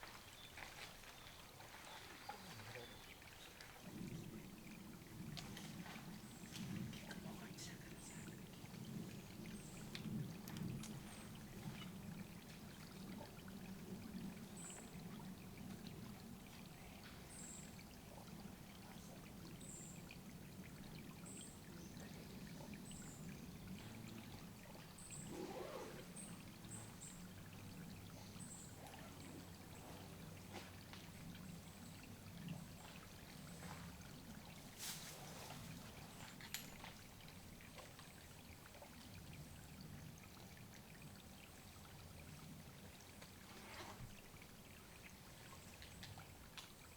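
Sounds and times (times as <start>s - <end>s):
water trickling: 0.0s - 46.9s.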